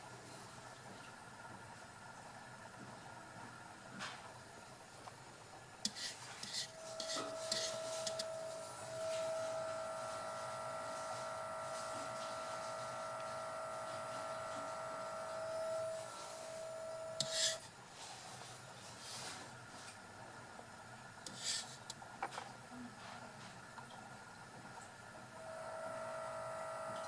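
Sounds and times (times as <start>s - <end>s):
motor high whine: 6.7s - 17.7s, 25.2s - 27.0s.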